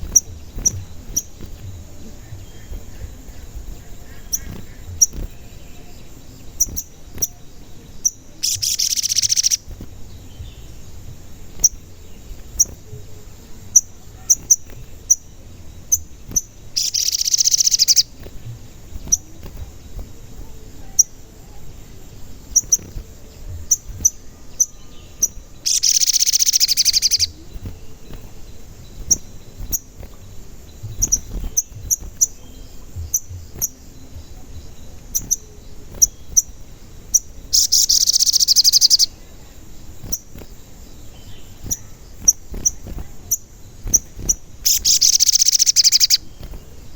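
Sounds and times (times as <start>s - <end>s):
loud rapid bird trill: 0.0s - 7.4s, 8.0s - 10.8s, 13.7s - 18.3s, 22.5s - 30.2s, 30.8s - 39.2s, 41.1s - 46.9s
bird chirping: 0.0s - 46.9s.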